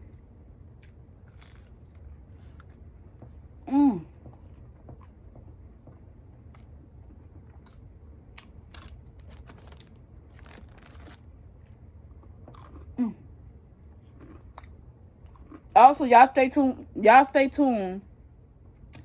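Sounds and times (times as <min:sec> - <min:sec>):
chewing and crunching food: 0:00.1 - 0:13.0, 0:13.8 - 0:15.8
person humming: 0:03.7 - 0:04.1.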